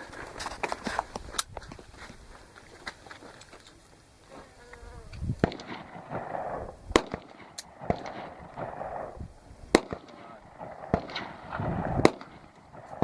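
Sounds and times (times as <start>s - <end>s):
rifle shots: 5.4s - 13.0s.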